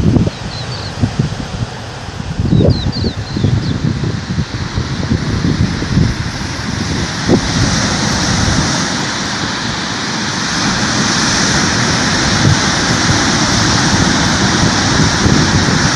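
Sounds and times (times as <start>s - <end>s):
rushing water: 0.0s - 15.9s.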